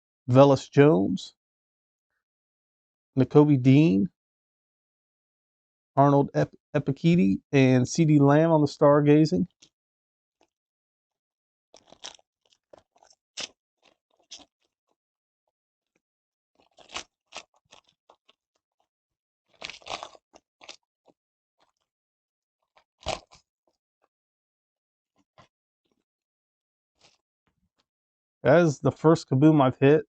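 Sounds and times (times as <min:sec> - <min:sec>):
wrapper crinkling and tearing: 0:11.8 - 0:14.3, 0:19.5 - 0:20.2.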